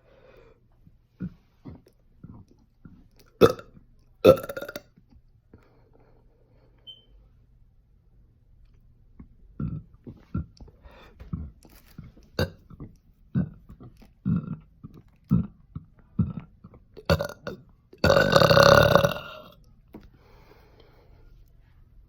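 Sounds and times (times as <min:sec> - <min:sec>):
person burping: 0:03.3 - 0:04.9, 0:09.6 - 0:10.6, 0:12.4 - 0:13.6, 0:14.2 - 0:14.7, 0:16.2 - 0:19.6.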